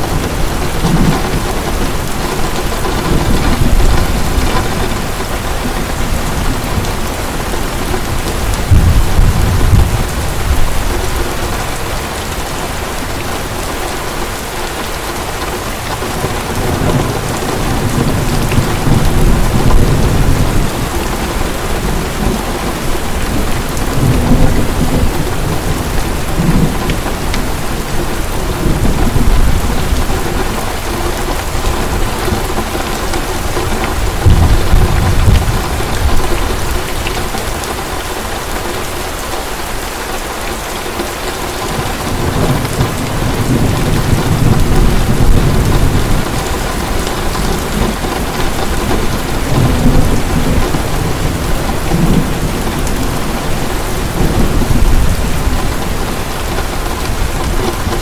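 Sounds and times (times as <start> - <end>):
thunder rumbling: 0.0 - 14.4, 15.1 - 38.8, 41.4 - 58.0
heavy rain falling: 0.0 - 58.0.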